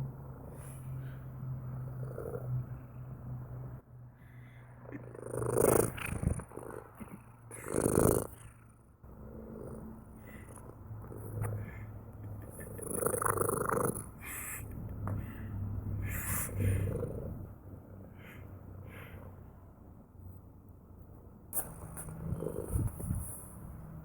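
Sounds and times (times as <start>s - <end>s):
cat purring: 1.8s - 2.9s, 4.8s - 14.6s, 16.0s - 17.6s, 21.8s - 23.6s.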